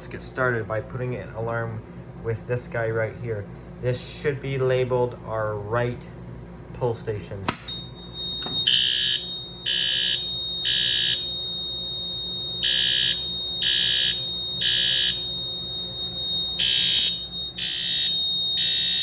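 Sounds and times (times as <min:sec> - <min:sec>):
fire alarm horn blasts: 0:07.7 - 0:19.0
steady high-pitched tone: 0:07.7 - 0:19.0.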